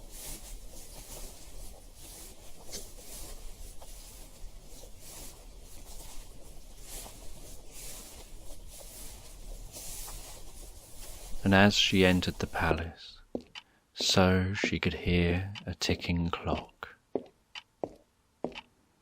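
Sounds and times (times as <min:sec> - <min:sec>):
footsteps on gravel: 0:00.0 - 0:12.8.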